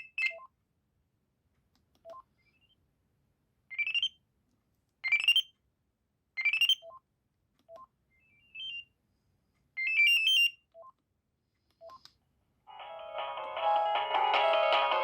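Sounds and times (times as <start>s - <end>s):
ringtone melody: 12.7s - 15.0s.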